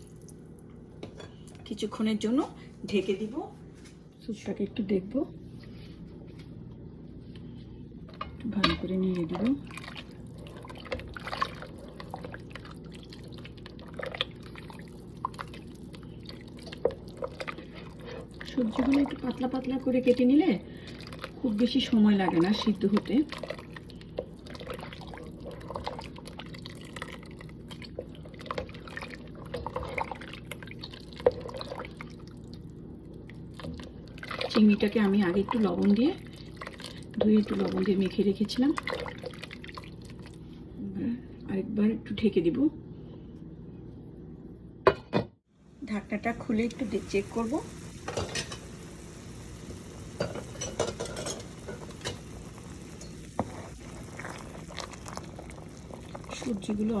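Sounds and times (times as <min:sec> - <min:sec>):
soup dripping and splashing in pot: 0:00.0 - 0:01.6, 0:09.3 - 0:20.0, 0:20.7 - 0:40.6, 0:47.8 - 0:57.0.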